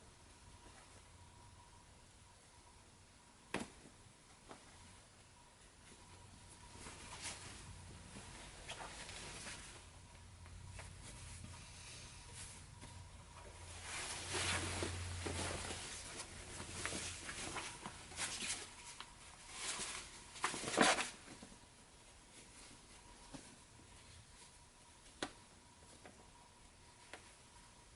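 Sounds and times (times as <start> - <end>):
fabric rustling and swishing: 5.9 - 9.9, 12.2 - 21.3.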